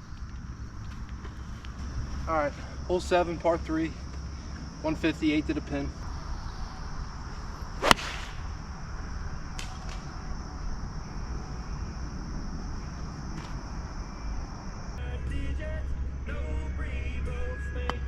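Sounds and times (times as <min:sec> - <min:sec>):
insects chirring: 0:00.0 - 0:15.0
golf club striking ball: 0:07.8 - 0:08.6.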